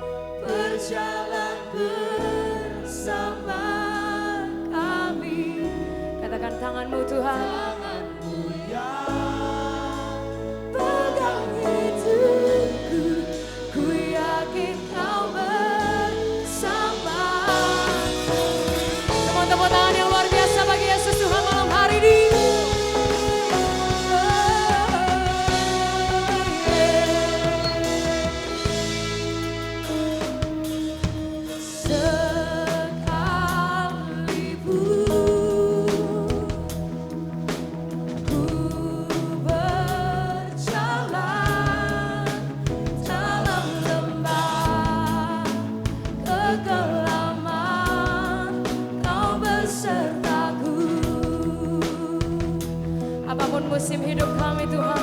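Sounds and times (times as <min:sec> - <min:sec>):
guitar: 0:00.0 - 0:55.0
worship band playing: 0:07.4 - 0:55.0.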